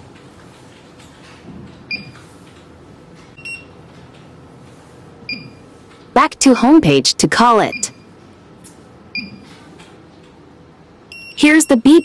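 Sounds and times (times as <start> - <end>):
short electronic keypad beeps: 3.4 - 3.7.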